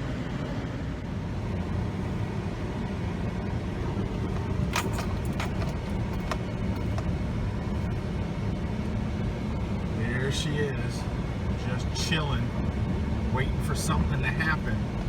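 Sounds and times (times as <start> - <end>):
road and engine rumble inside car: 0.0 - 15.0
light clicks or jingles: 4.4 - 7.1.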